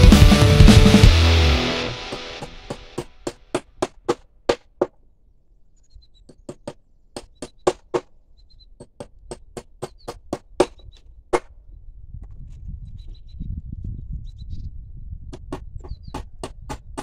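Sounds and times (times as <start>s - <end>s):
hammer blows: 0.0s - 3.7s.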